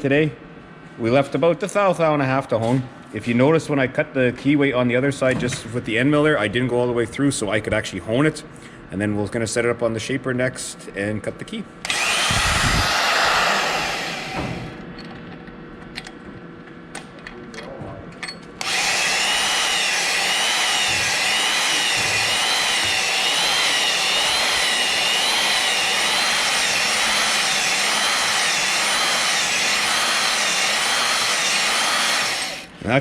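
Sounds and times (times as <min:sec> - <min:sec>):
power hone whining: 0:11.9 - 0:14.8, 0:18.6 - 0:32.7.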